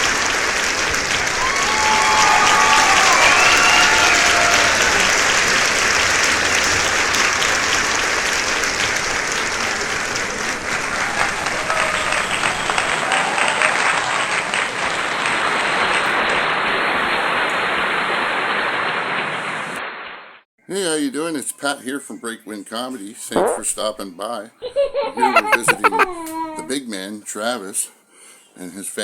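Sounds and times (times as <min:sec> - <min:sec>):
audience applauding: 0:00.0 - 0:19.8, 0:25.3 - 0:26.4.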